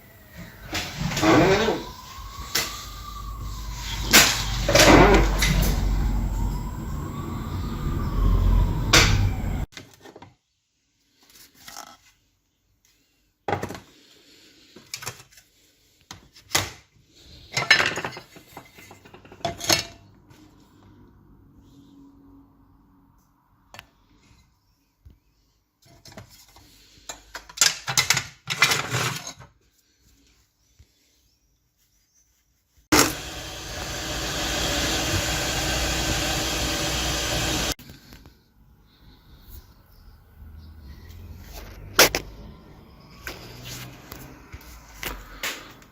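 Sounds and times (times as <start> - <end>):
diesel engine starting and running: 0.0 - 9.7, 32.9 - 37.8.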